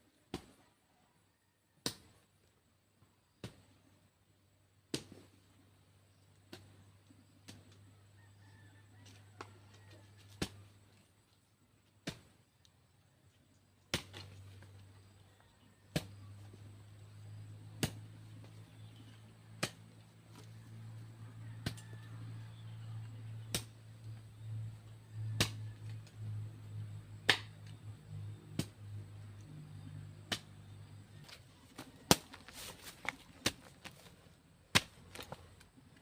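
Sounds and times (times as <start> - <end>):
hoe chopping into soil: 13.9 - 15.2, 15.9 - 16.8, 17.4 - 20.4, 23.4 - 23.8, 28.5 - 28.8, 30.2 - 35.6.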